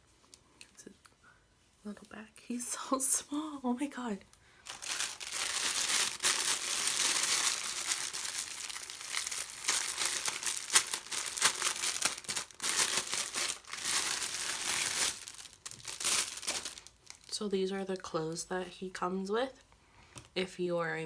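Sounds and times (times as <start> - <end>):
packaging rustling and crackling: 4.6 - 17.4.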